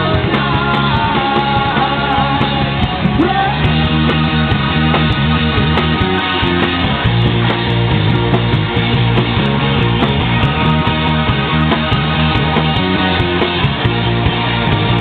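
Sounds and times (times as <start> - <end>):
rock band playing live: 0.0 - 15.0.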